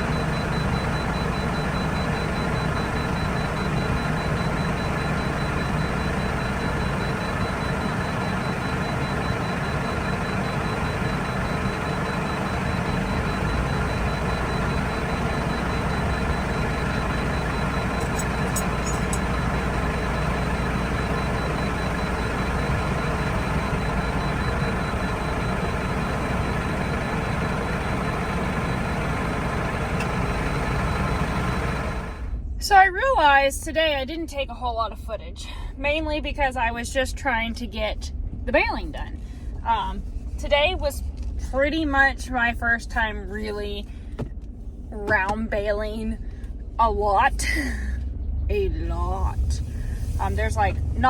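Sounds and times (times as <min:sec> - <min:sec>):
high repeated beep: 0:00.0 - 0:27.6
tractor engine running: 0:00.0 - 0:32.5.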